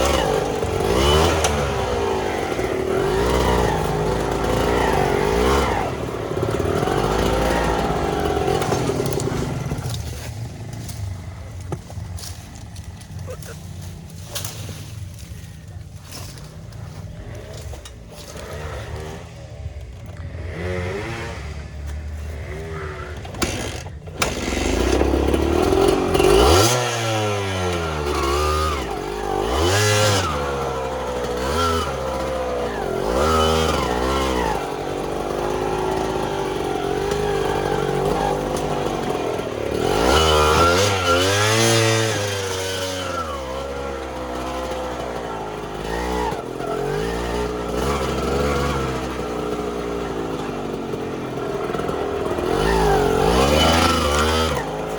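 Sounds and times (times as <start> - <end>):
motorcycle engine revving: 0.0 - 54.9.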